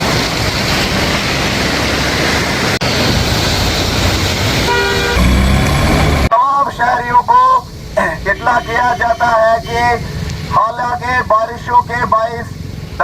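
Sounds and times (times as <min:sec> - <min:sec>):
stream rushing: 0:00.0 - 0:06.3
vehicle horn toot: 0:04.7 - 0:05.4, 0:08.3 - 0:09.9.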